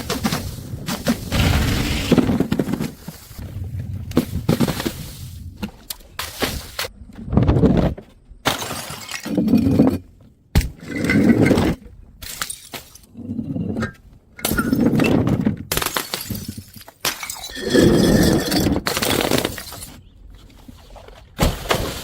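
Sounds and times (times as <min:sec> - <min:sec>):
glass bottles shattering: 0:15.7 - 0:19.9.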